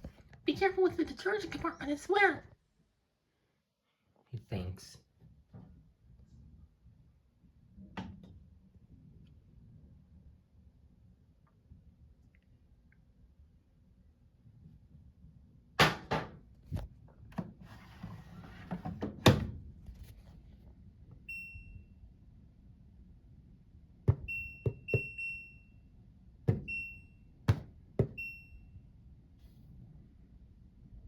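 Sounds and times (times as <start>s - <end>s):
knocks and thuds: 27.5s - 28.2s.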